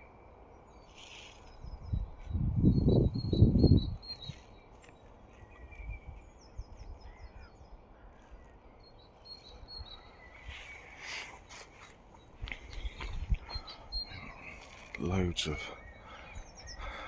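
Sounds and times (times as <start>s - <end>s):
small birds chirping: 0.0s - 17.0s
wind rumble on microphone: 1.3s - 4.6s, 5.3s - 8.5s, 12.3s - 14.6s.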